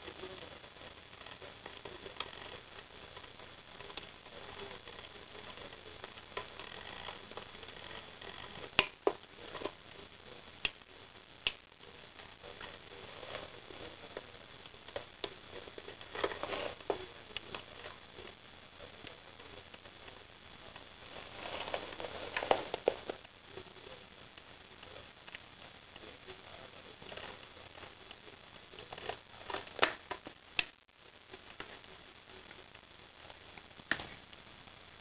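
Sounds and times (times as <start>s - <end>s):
sharp clicks and taps: 29.8s - 30.8s.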